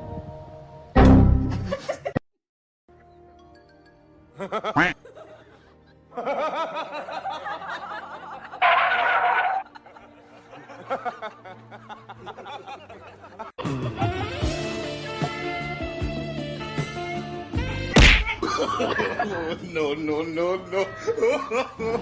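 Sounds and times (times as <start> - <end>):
background music: 0.0 - 2.1, 2.9 - 22.0
person laughing: 1.5 - 2.2, 4.6 - 5.0, 18.2 - 19.4
sharp knock: 18.0 - 18.4.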